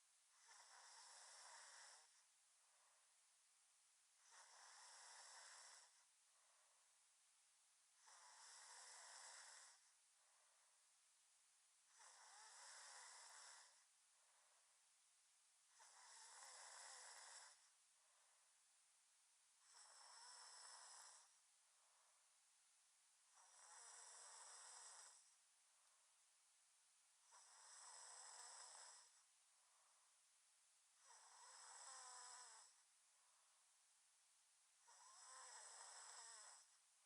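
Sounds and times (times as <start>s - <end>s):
person snoring: 0.4s - 2.2s, 4.2s - 6.0s, 8.0s - 9.9s, 11.9s - 13.8s, 15.7s - 17.7s, 19.6s - 21.4s, 23.3s - 25.3s, 27.2s - 29.2s, 31.0s - 32.8s, 34.8s - 36.8s.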